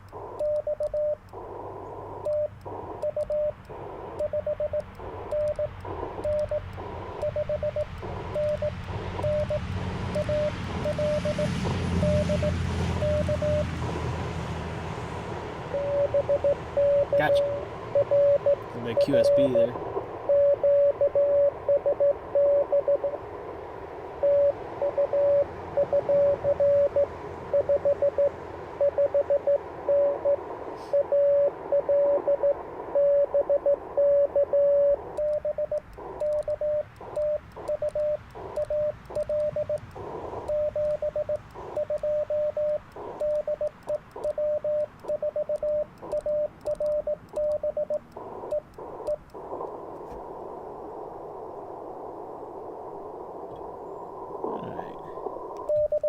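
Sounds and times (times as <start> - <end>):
morse code tone: 0.2 - 13.8, 15.7 - 23.2, 24.2 - 49.2, 55.6 - 56.0
radio band hiss: 1.3 - 14.1, 16.8 - 20.3, 30.3 - 35.2, 35.9 - 43.2, 48.0 - 55.8.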